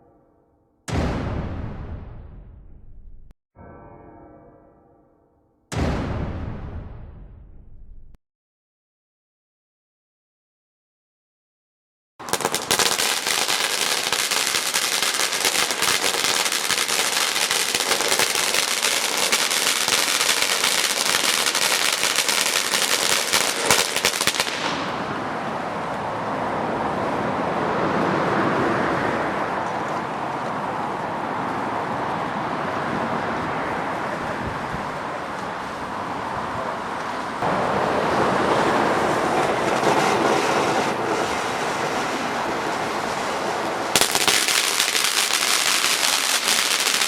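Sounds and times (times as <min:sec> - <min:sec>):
fireworks crackling: 0:12.2 - 0:26.0, 0:37.4 - 0:47.0.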